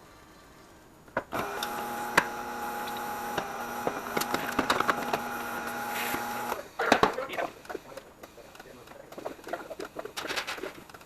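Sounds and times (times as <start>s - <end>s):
tire changer humming: 1.3s - 6.7s.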